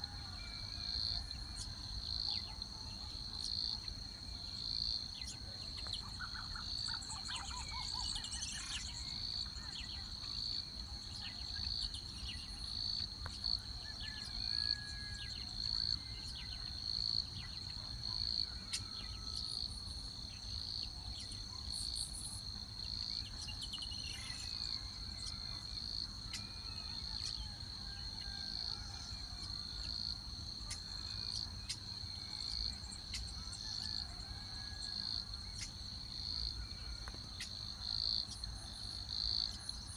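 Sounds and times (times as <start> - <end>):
faint bird chirps: 5.2 - 12.6.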